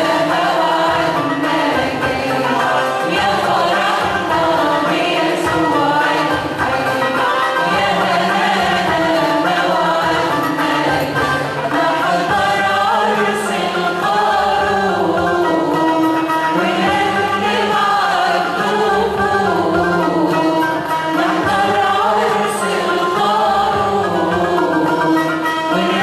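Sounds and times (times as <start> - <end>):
choir singing a hymn: 0.0 - 26.0
instrumental accompaniment: 0.0 - 26.0.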